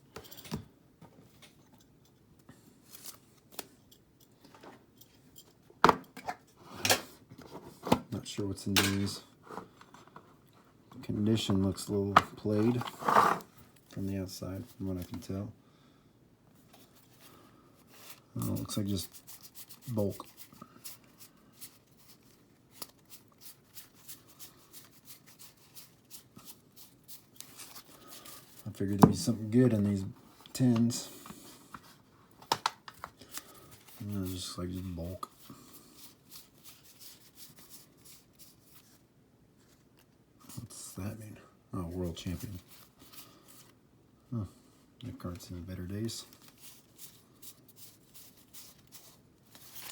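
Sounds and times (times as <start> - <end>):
trading cards rustling: 16.8 - 29.7, 30.3 - 39.0, 45.2 - 49.9.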